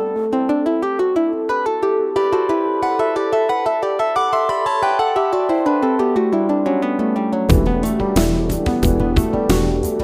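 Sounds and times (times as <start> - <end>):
plucked string music: 0.0 - 10.0.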